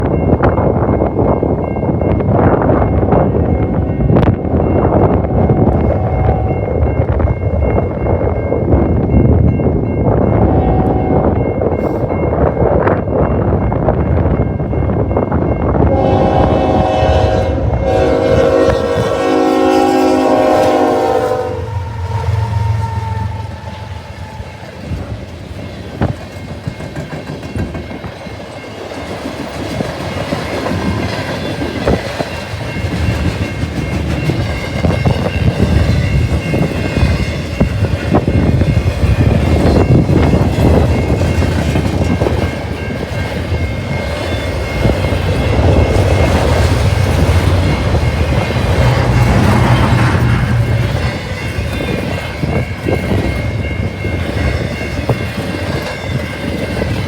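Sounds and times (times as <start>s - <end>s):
train wheels rumbling on rails: 0.0s - 57.0s
locomotive air horn: 15.9s - 24.5s.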